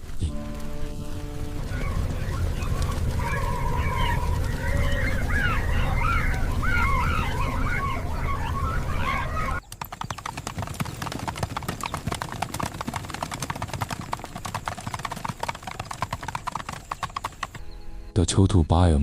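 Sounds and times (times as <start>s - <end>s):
hooves clattering on hard ground: 0.0s - 17.6s
high warbling calls: 1.2s - 9.7s.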